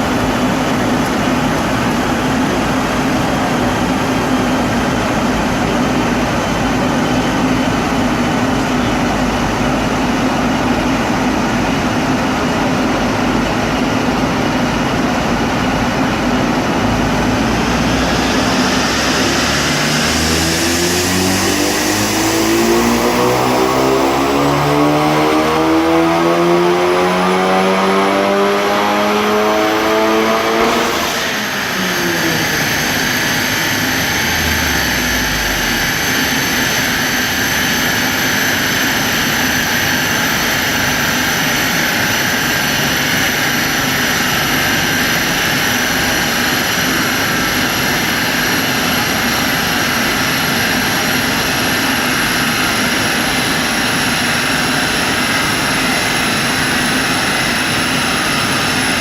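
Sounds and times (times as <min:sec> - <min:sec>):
loud steady rush: 0:00.0 - 0:59.0
engine revving at full throttle: 0:15.7 - 0:59.0
high thin whine: 0:15.8 - 0:38.1.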